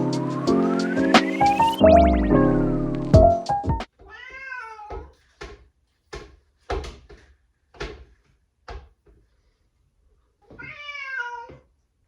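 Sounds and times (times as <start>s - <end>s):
cat meowing: 4.0s - 5.1s, 10.5s - 11.6s.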